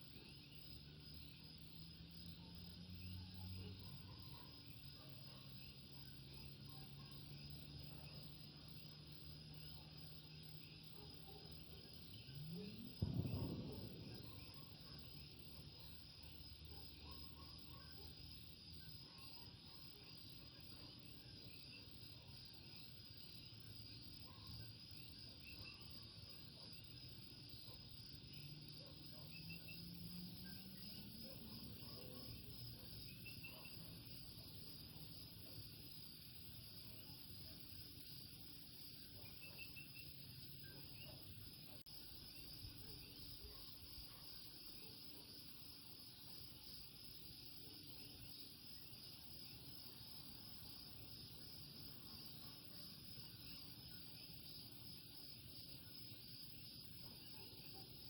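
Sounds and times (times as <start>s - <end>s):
high insect trill: 12.1s - 17.2s.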